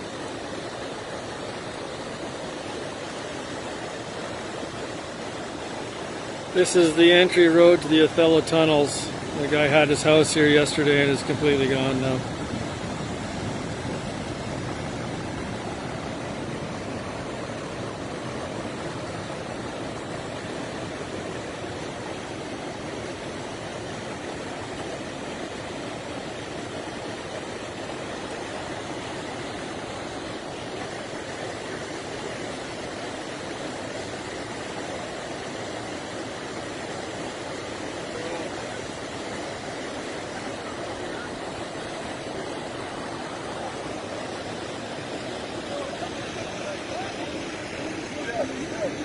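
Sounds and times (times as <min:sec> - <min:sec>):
river rushing: 0:00.0 - 0:49.0.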